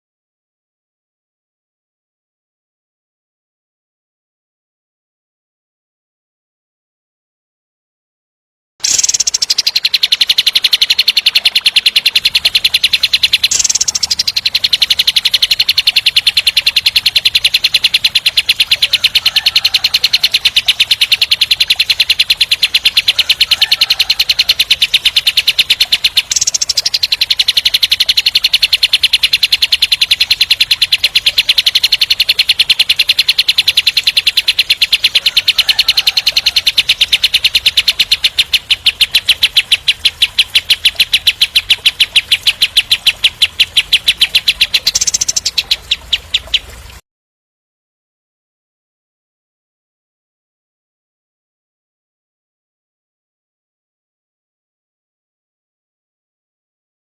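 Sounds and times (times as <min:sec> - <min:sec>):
bird singing rapid rough notes: 0:08.8 - 0:47.0.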